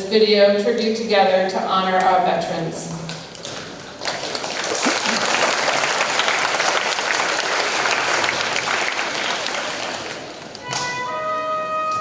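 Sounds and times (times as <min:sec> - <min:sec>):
audience applauding: 0:03.7 - 0:10.8.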